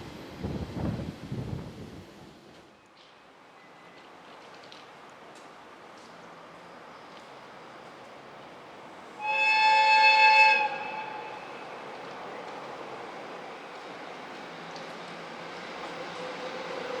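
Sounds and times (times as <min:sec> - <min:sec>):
freight train rumble: 0:00.0 - 0:02.7, 0:04.3 - 0:17.0
locomotive horn blast: 0:09.2 - 0:11.6.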